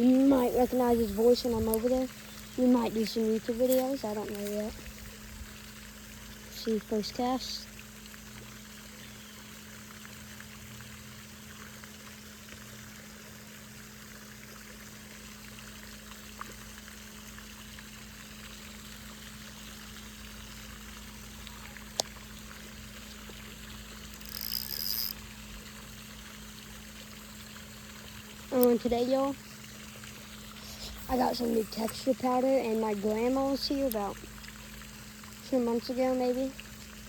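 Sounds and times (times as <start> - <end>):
running water trickling: 0.0 - 37.0
high-pitched ringing rattle: 24.1 - 25.2.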